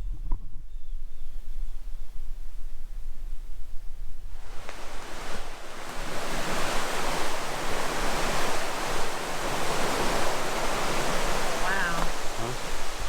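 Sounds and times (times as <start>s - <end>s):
running water rushing: 4.4s - 13.0s.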